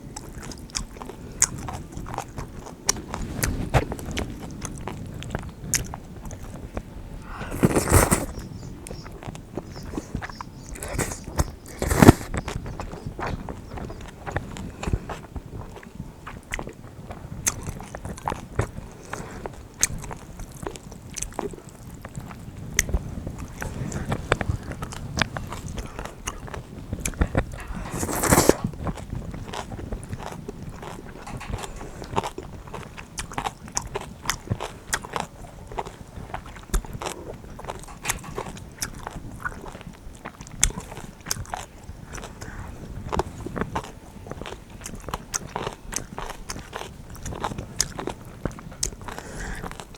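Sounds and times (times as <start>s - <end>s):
person chewing and crunching: 0.2s - 49.9s
mouth clicks: 7.2s - 14.9s, 22.8s - 29.0s, 30.8s - 33.4s, 36.7s - 39.7s.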